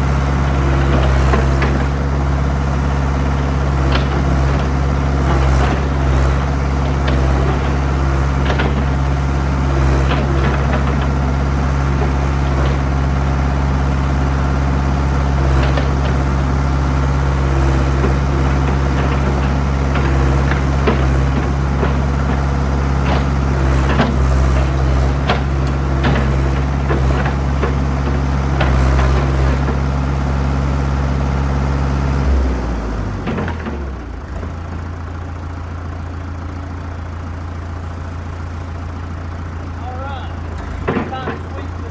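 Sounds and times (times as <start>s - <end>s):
backhoe engine running: 0.0s - 41.9s
digging clanks and knocks: 3.4s - 9.1s, 9.9s - 13.9s, 17.9s - 29.8s, 40.3s - 41.9s.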